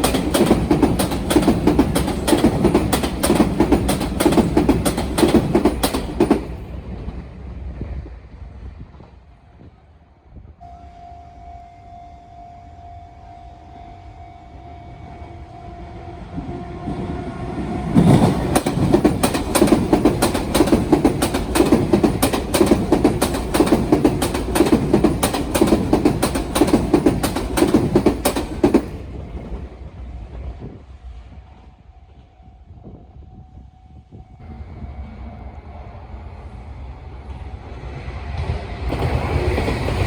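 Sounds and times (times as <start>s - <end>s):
train wheels clattering over rail joints: 0.0s - 7.2s, 17.6s - 29.6s, 38.9s - 40.0s
steady crossing tone: 10.6s - 29.0s.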